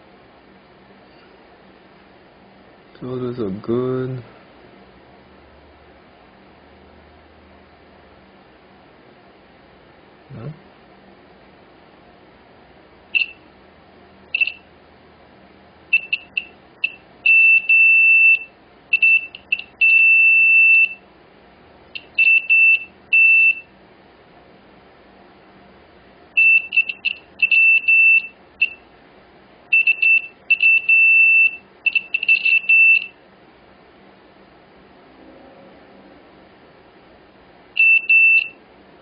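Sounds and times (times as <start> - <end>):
multimeter beeping: 13.2 - 13.4, 14.3 - 14.6, 15.9 - 21.0, 22.0 - 23.7, 26.4 - 28.8, 29.7 - 33.2, 37.8 - 38.6.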